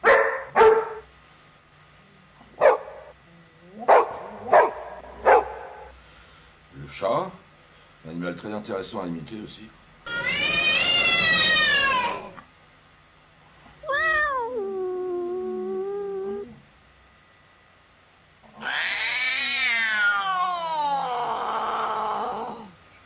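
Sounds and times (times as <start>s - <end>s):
man imitating cat meows: 10.1s - 12.4s, 13.9s - 16.6s.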